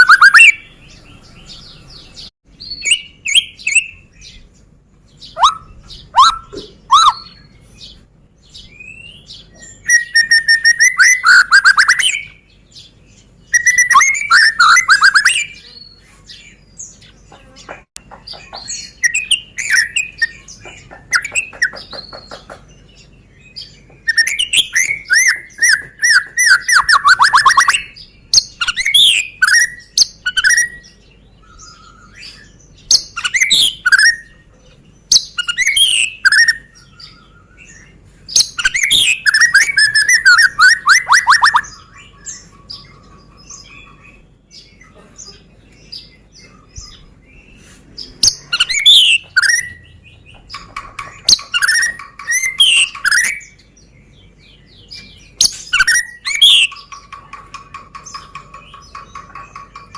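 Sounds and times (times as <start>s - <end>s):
songbird singing whistles: 0.0s - 0.7s, 1.5s - 4.4s, 5.2s - 7.6s, 8.5s - 12.4s, 13.4s - 15.8s, 18.6s - 20.5s, 23.6s - 34.4s, 35.1s - 44.1s, 48.2s - 50.0s, 51.2s - 53.7s, 54.6s - 57.0s.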